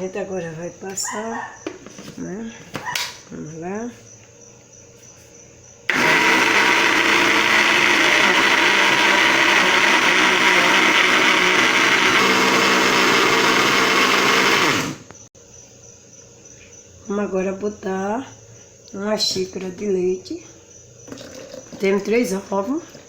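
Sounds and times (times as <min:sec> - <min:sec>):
kitchen blender running: 0:05.9 - 0:15.1.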